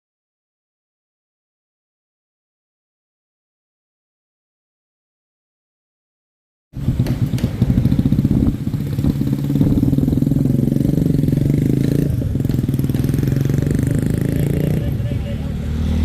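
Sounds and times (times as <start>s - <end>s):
vehicle engine running: 6.8s - 16.0s.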